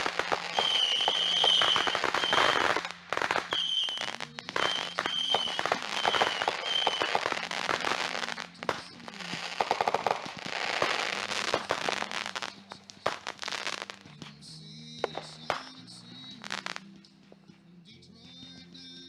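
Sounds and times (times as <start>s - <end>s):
firework whistle: 0.0s - 14.1s
firework bangs and crackles: 0.0s - 17.0s.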